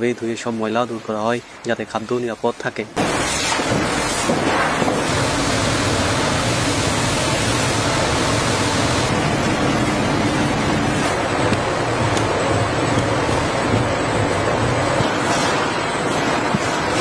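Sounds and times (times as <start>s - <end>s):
water spraying: 3.0s - 17.0s
low machinery hum: 4.8s - 17.0s.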